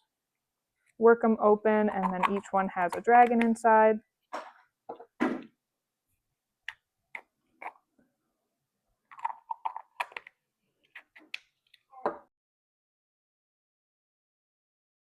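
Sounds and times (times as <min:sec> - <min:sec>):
plastic toys clicking and rattling: 0:01.9 - 0:03.5, 0:09.1 - 0:11.9.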